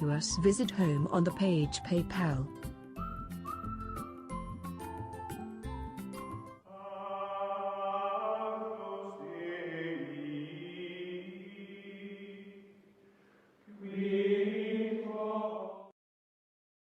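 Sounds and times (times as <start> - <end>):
choir-like music chords: 6.6 - 12.6, 13.7 - 15.9.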